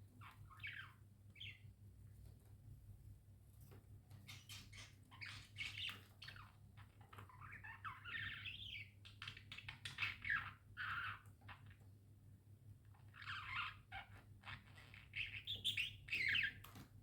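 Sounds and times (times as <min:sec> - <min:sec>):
budgerigars chirping: 0:00.2 - 0:01.6, 0:04.3 - 0:11.2, 0:13.2 - 0:16.6.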